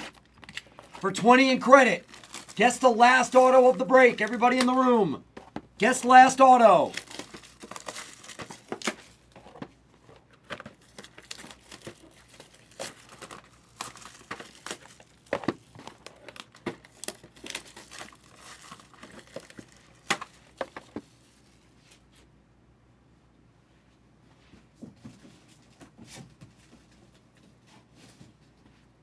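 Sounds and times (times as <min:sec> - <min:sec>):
shrink wrap tearing: 0:00.0 - 0:05.0, 0:05.8 - 0:09.3, 0:10.5 - 0:20.6
plastic shrink wrap crinkling: 0:00.0 - 0:21.6.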